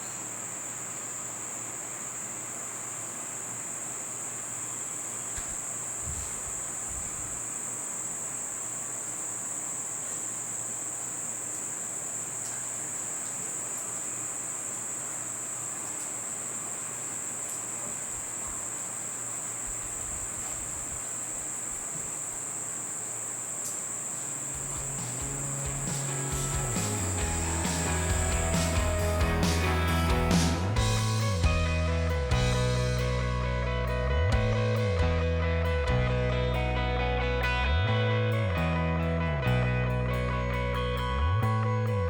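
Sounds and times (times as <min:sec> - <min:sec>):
insects trilling: 0:00.0 - 0:35.1.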